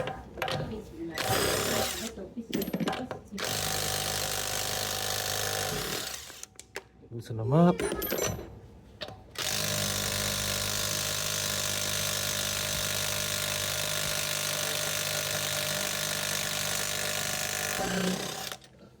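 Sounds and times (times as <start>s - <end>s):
power wrench running: 1.2s - 2.2s, 3.4s - 6.6s, 9.4s - 18.7s.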